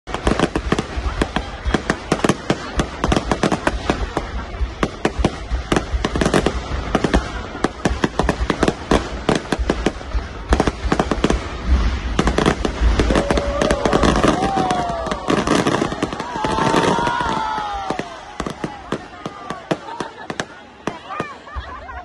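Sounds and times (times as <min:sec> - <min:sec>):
fireworks bangs and crackles: 0:00.0 - 0:22.0.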